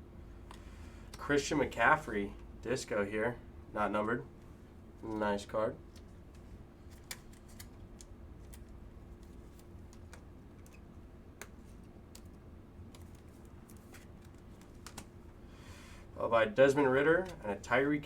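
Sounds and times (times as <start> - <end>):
low steady hum: 0.0 - 18.0
trading cards clicking and tapping: 5.9 - 15.1.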